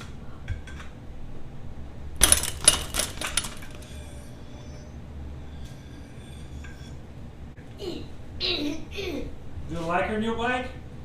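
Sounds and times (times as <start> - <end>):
small metal parts clinking: 2.2 - 4.1.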